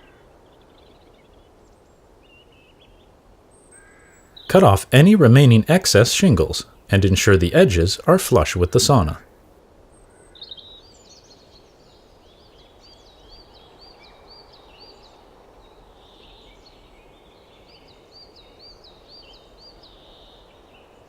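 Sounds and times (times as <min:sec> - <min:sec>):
songbird chirping: 0:00.0 - 0:09.2.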